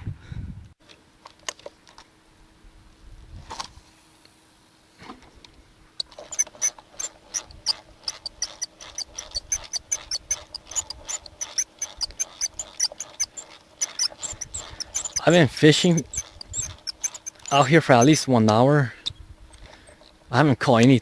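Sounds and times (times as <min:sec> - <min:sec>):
rapid sharp clicks: 0:06.0 - 0:21.0.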